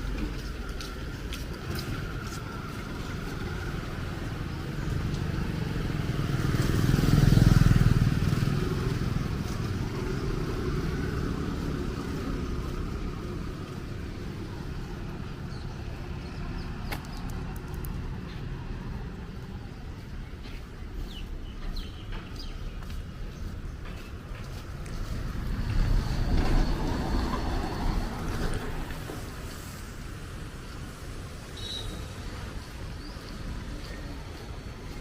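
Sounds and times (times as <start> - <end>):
traffic rumble: 0.0 - 35.0
vehicle passing on wet road: 1.8 - 15.2, 25.0 - 31.3.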